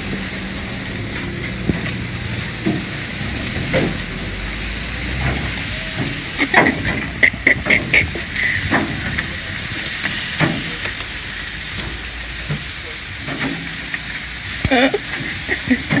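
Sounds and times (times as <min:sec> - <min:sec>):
food sizzling: 0:00.0 - 0:16.0.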